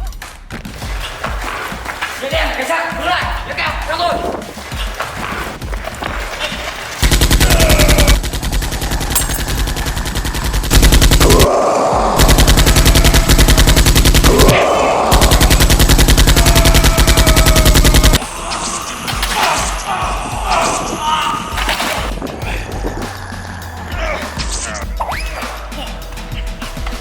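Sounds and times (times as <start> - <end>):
rapid automatic gunfire: 7.0 - 11.6, 12.2 - 18.2.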